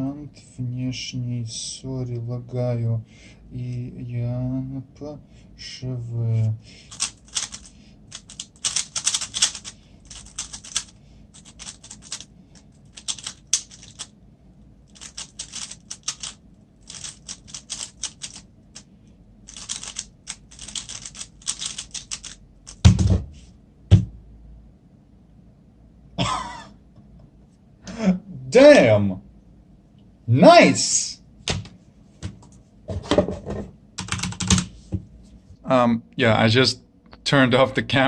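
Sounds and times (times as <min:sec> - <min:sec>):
puzzle cube clicking: 0:06.9 - 0:12.3, 0:12.9 - 0:14.1, 0:15.0 - 0:18.4, 0:19.5 - 0:22.8
heavy thumps: 0:22.8 - 0:24.2.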